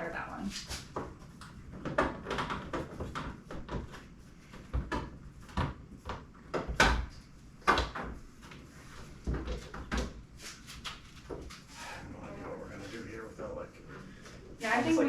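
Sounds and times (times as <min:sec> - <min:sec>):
plastic knocks and clunks: 0:01.0 - 0:08.6, 0:09.2 - 0:10.2.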